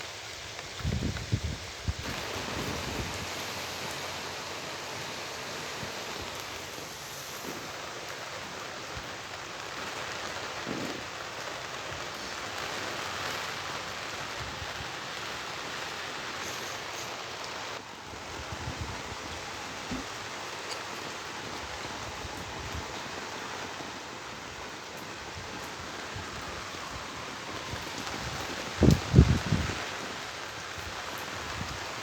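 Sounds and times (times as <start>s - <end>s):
rain falling: 0.0s - 32.0s
wind: 0.0s - 32.0s.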